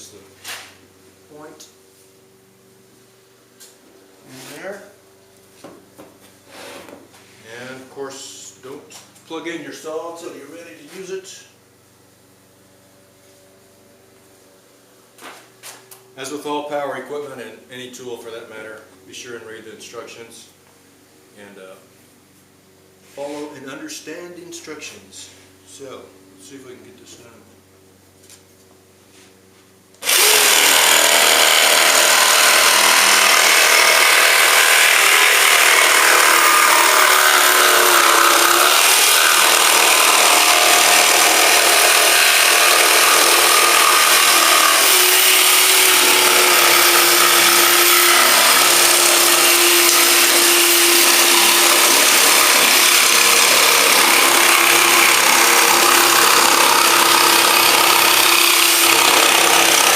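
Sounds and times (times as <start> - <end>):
jigsaw cutting plywood: 30.0 - 59.9.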